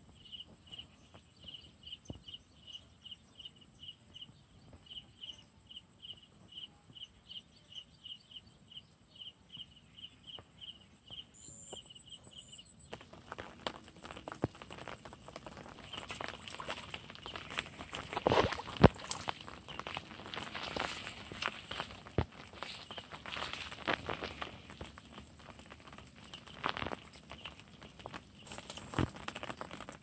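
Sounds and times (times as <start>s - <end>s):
insect chirping: 0.1s - 30.0s
close rustling and crackling: 11.7s - 30.0s.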